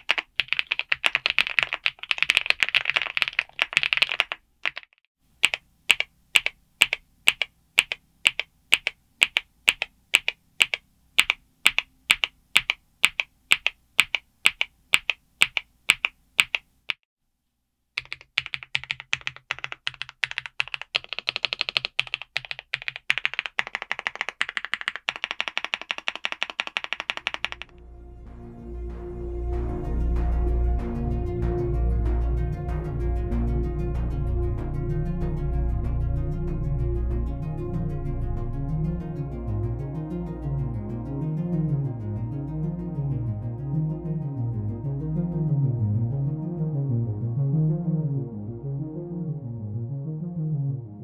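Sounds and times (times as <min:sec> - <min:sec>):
fast typing on mechanical keyboard: 0:00.0 - 0:16.7, 0:18.0 - 0:27.7.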